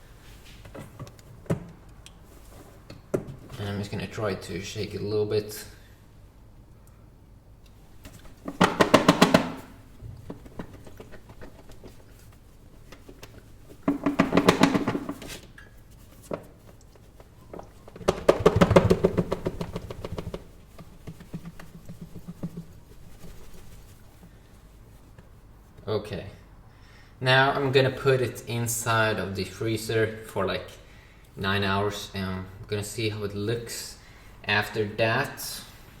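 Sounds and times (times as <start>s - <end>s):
container contents rattling: 8.0s - 15.4s, 17.4s - 24.1s.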